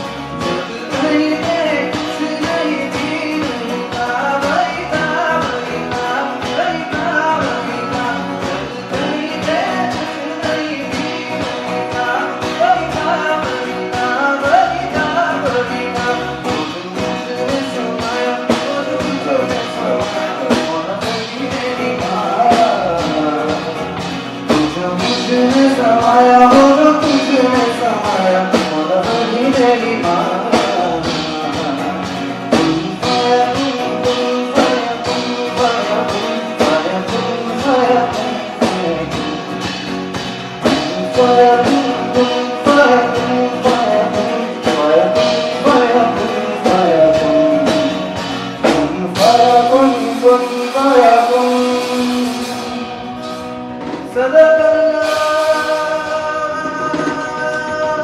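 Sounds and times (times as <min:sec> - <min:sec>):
guitar: 0:00.0 - 0:58.0
person singing: 0:00.0 - 0:58.0
steady beat: 0:00.0 - 0:58.0.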